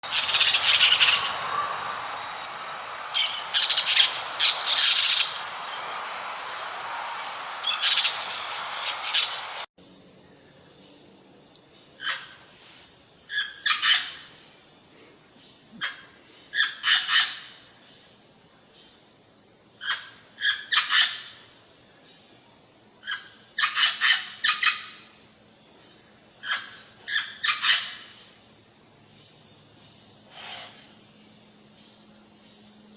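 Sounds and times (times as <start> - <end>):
bird calling harshly: 0.0 - 9.6.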